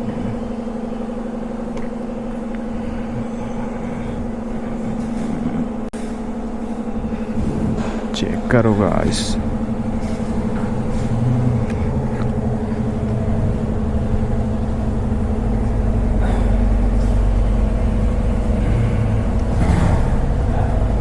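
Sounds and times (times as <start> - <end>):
vehicle engine humming: 0.0 - 21.0
deep low rumble: 6.9 - 21.0.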